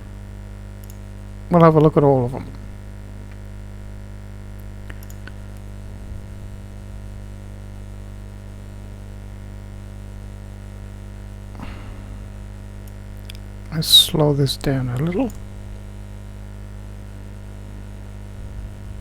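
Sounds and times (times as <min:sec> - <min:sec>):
electrical mains hum: 0:00.0 - 0:19.0
faint clicks: 0:00.8 - 0:01.1, 0:04.6 - 0:05.7, 0:12.8 - 0:13.5.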